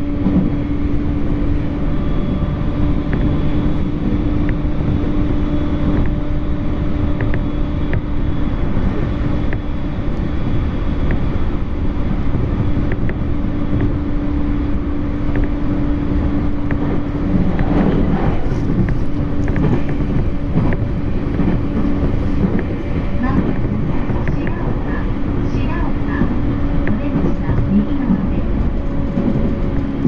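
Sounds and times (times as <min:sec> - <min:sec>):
train running rumble: 0:00.0 - 0:30.0
light rhythmic clicks: 0:07.1 - 0:08.1.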